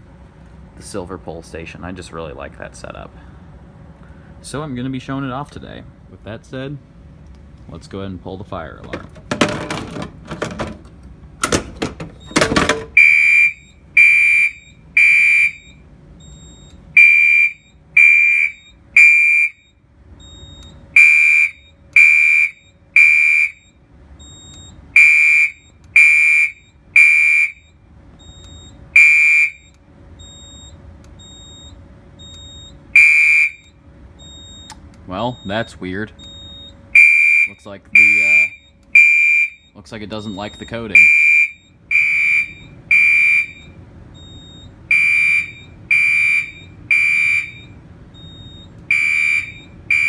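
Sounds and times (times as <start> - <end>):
fire alarm horn blasts: 12.2 - 34.7, 35.3 - 50.0.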